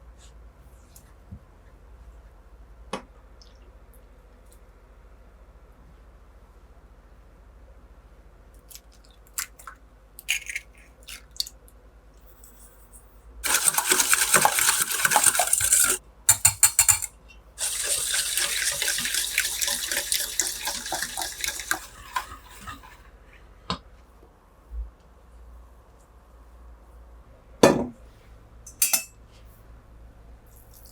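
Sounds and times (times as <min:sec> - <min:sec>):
tap running into sink: 0:13.4 - 0:23.0.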